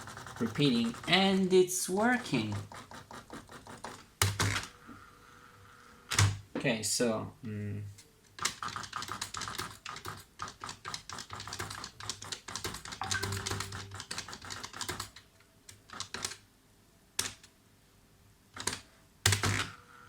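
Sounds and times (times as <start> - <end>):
electronic typewriter typing: 0.0 - 4.6, 8.4 - 15.2.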